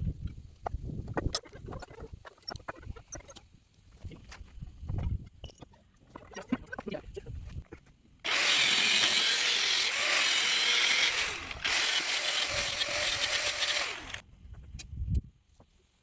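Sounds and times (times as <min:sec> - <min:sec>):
power tool grinding metal: 0:08.3 - 0:14.2.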